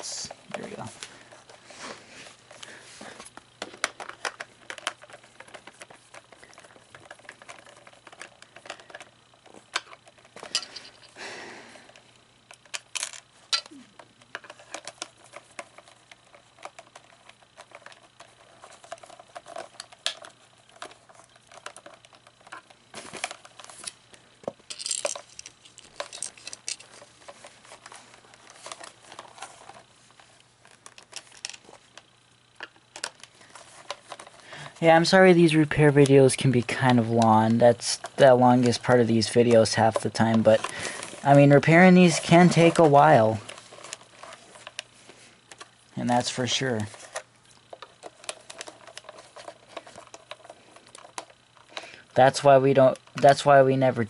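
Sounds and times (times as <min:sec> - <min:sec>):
plastic parts clicking and tapping: 0:03.3 - 0:11.2, 0:11.9 - 0:29.9, 0:30.6 - 0:34.4, 0:45.5 - 0:53.5.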